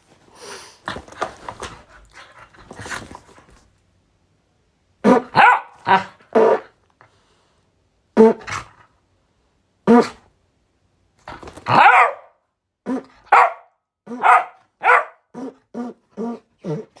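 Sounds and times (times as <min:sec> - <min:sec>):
dog barking: 0:05.0 - 0:06.7, 0:11.7 - 0:15.6.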